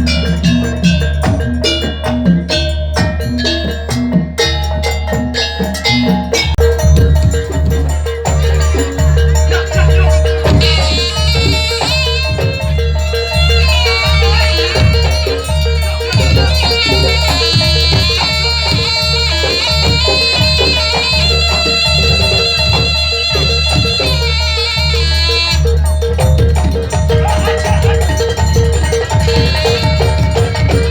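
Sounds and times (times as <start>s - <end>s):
drum beats: 0.0s - 30.9s
shrill reed pipe melody: 6.3s - 30.9s.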